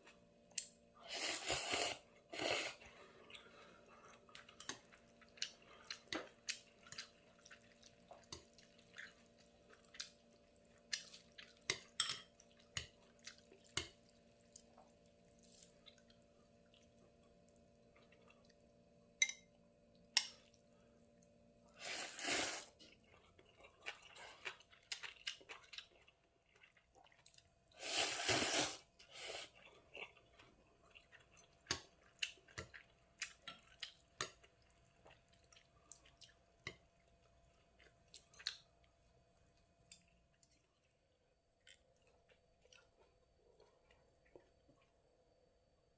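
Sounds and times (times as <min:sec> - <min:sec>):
soft chewing: 0:00.0 - 0:27.8, 0:28.5 - 0:45.4
slurping noodles: 0:01.0 - 0:03.9, 0:21.7 - 0:22.8, 0:27.8 - 0:29.6.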